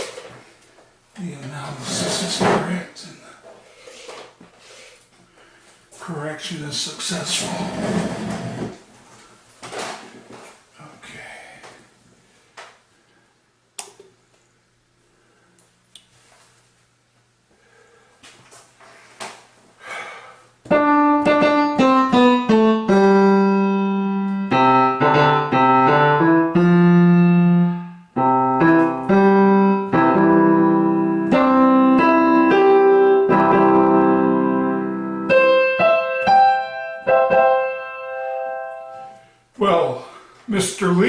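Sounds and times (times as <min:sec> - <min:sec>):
electronic keyboard notes and chords: 0:20.7 - 0:39.2.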